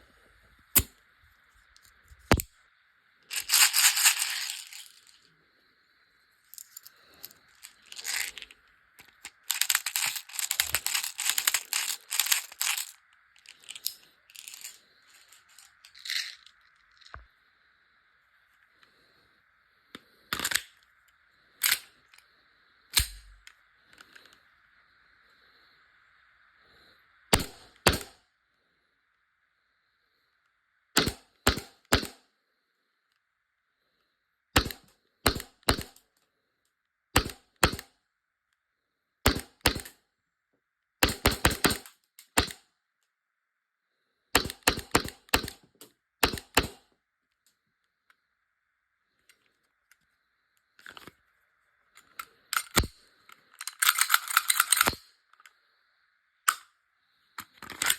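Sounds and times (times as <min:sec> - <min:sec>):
airsoft pistol shots: 0:27.4 - 0:28.2, 0:31.0 - 0:32.2, 0:37.2 - 0:37.9, 0:39.3 - 0:39.9, 0:41.0 - 0:42.6, 0:44.4 - 0:45.6.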